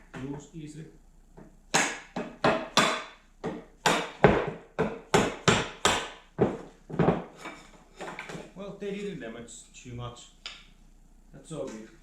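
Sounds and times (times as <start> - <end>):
hammer knocking wooden slats: 1.7 - 7.3.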